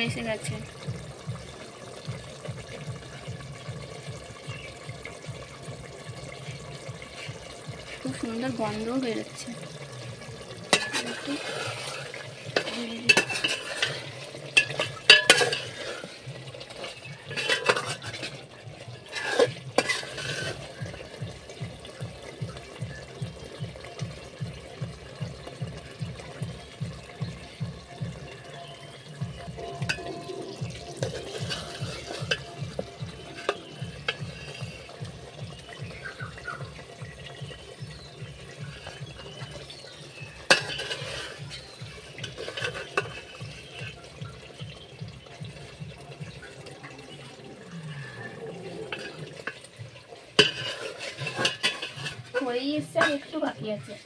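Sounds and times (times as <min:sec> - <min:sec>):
curry frying: 0:00.0 - 0:54.0
spoon scraping a pot: 0:10.7 - 0:21.1, 0:29.5 - 0:35.0, 0:38.6 - 0:44.1, 0:48.3 - 0:49.7, 0:50.4 - 0:53.6.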